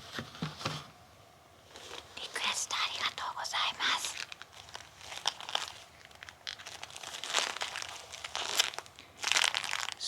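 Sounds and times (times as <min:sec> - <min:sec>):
rubber gloves rubbing and sticking: 0:04.1 - 0:10.0.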